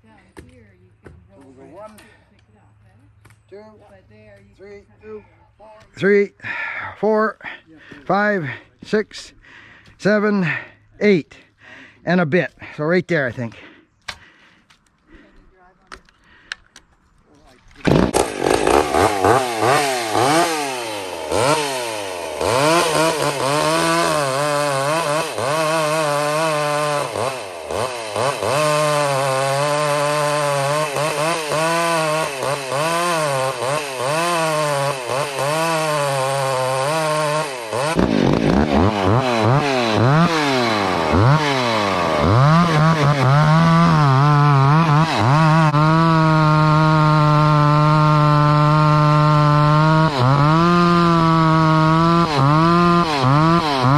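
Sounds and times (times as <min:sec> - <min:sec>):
chainsaw bucking a log: 0:17.7 - 0:53.9.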